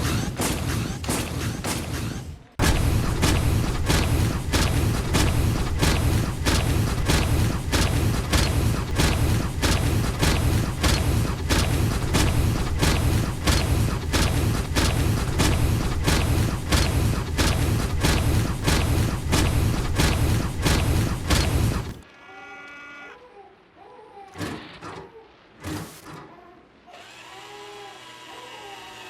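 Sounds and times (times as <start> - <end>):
stomping footsteps: 0.4 - 22.0
continuous low rumble: 2.2 - 22.2.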